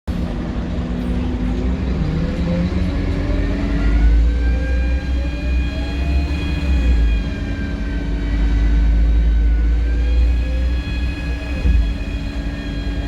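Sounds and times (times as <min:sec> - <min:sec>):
diesel engine accelerating: 0:00.1 - 0:13.0
turbocharger whistle: 0:03.8 - 0:13.0.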